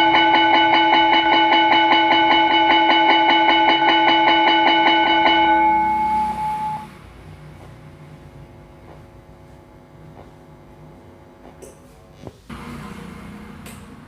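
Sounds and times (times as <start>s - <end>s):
electric school bell ringing: 0.0s - 7.0s
faint hum: 0.0s - 13.9s.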